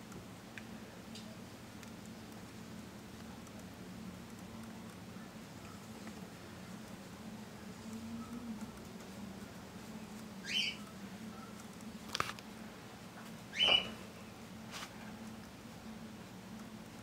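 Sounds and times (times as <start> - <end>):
small animal squeaking: 10.4 - 10.9, 13.5 - 14.0.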